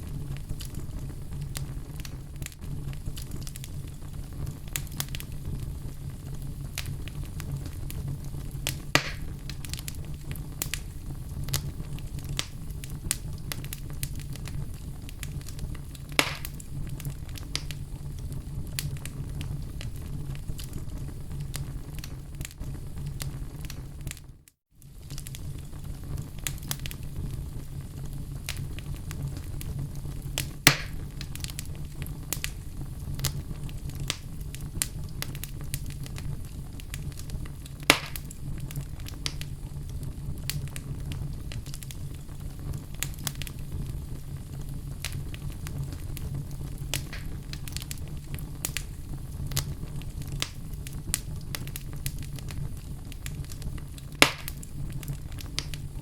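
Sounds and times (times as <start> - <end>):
fire crackling and popping: 0.0 - 56.0
low rumble of flames: 0.0 - 56.0.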